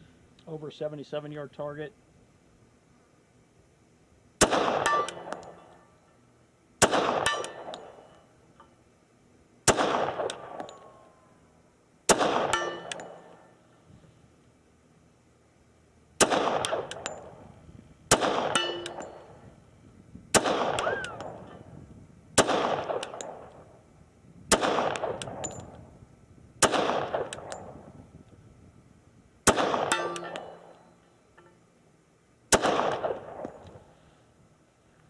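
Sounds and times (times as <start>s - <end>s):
pistol shots echoing: 4.4s - 5.7s, 6.8s - 8.1s, 9.7s - 11.0s, 12.1s - 13.4s, 16.2s - 17.4s, 18.1s - 19.4s, 20.3s - 21.5s, 22.4s - 23.7s, 24.5s - 25.8s, 26.6s - 27.8s, 29.4s - 30.8s, 32.5s - 33.6s
metallic clinks: 12.6s - 13.6s, 18.6s - 19.4s, 25.3s - 25.8s, 29.9s - 31.6s.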